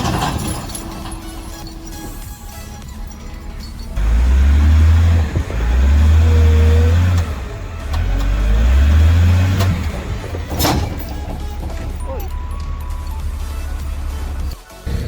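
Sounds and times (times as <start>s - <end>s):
diesel engine revving: 0.0s - 15.0s.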